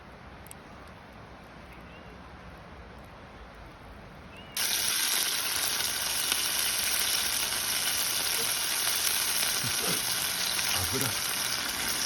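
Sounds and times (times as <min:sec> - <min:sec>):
food sizzling in hot oil: 0:04.6 - 0:12.0.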